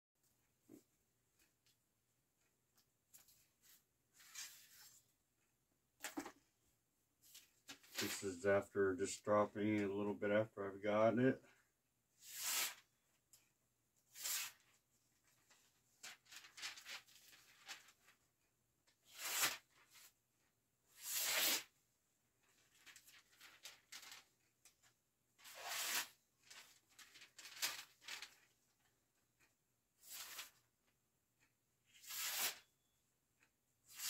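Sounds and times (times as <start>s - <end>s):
sword tearing through paper: 12.2s - 12.8s, 14.1s - 14.6s, 19.0s - 20.0s, 20.9s - 21.7s, 25.4s - 28.3s, 30.0s - 30.6s, 31.9s - 32.7s.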